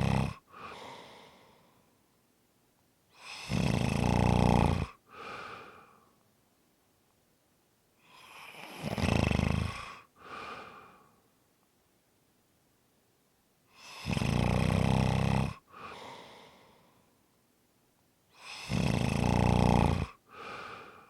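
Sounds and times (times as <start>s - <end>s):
loud rough snore: 0.0s - 0.4s, 3.2s - 5.0s, 8.1s - 10.1s, 13.8s - 15.6s, 18.4s - 20.7s
soft breath: 0.5s - 2.0s, 5.1s - 6.2s, 9.8s - 11.4s, 15.7s - 17.2s, 20.2s - 21.0s.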